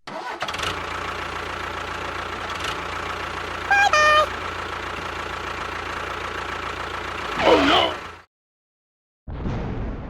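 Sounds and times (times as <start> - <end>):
engine idling: 0.1 - 8.3
two-note horn beep: 3.7 - 4.4.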